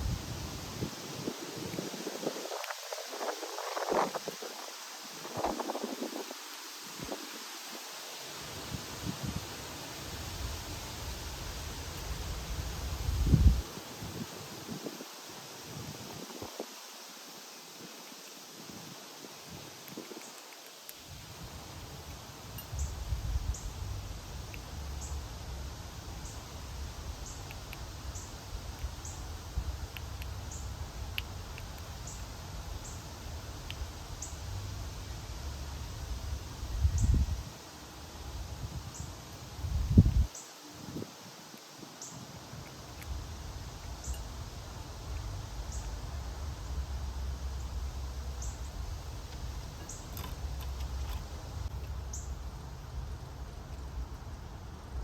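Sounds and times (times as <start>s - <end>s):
low outdoor rumble: 43.1s - 55.0s.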